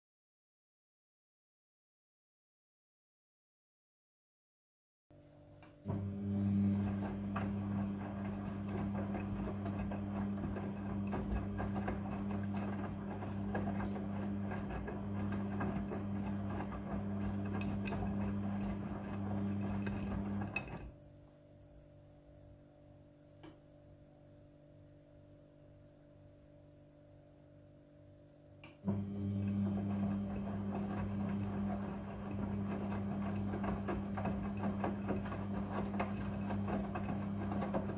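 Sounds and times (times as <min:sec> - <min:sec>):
washing machine motor humming: 0:05.7 - 0:21.0, 0:28.6 - 0:37.9
wet laundry tumbling: 0:05.9 - 0:20.9, 0:29.2 - 0:37.9.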